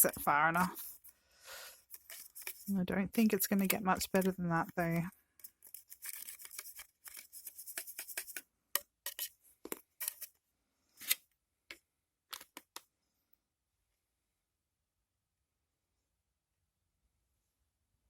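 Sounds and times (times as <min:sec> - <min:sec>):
plastic spoon scraping in cup: 0:00.0 - 0:01.1, 0:01.8 - 0:08.4, 0:09.0 - 0:10.3.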